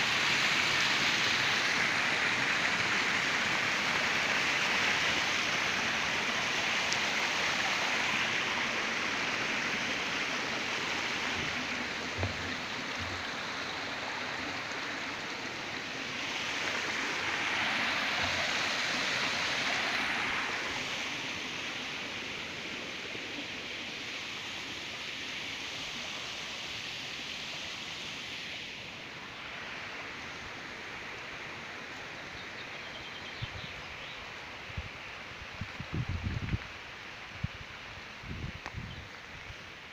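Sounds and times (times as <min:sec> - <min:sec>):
stream flowing over stones: 0:00.0 - 0:32.8, 0:33.8 - 0:39.9.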